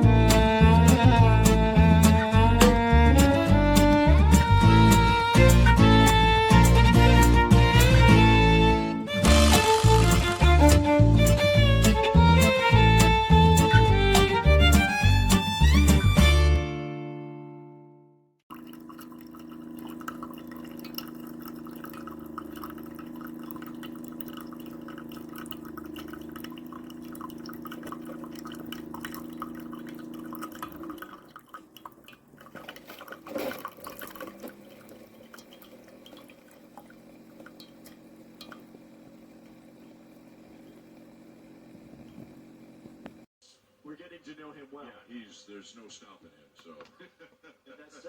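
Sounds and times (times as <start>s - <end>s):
coffee maker pump hum: 0.0s - 16.5s, 18.5s - 43.3s
coffee maker sputters and clicks: 9.2s - 11.6s, 18.5s - 43.3s
coffee dripping into cup: 18.5s - 42.4s.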